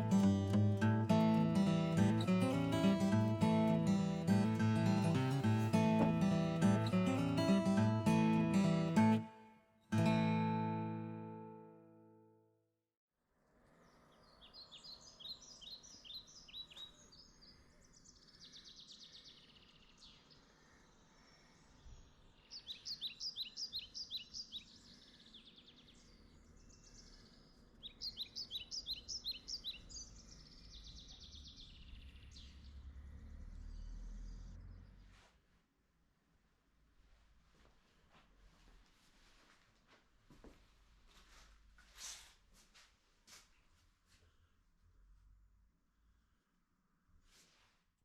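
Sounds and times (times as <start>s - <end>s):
songbird singing faintly: 13.7s - 35.1s.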